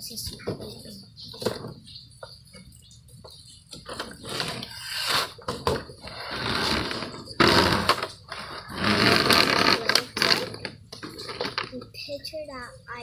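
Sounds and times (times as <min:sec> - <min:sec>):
cardboard and plastic tearing: 0:04.0 - 0:11.7.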